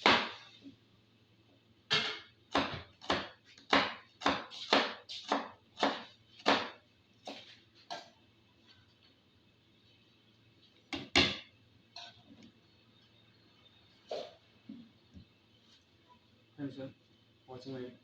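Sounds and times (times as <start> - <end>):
knife chopping onion on board: 0.0 - 0.4, 1.9 - 8.1.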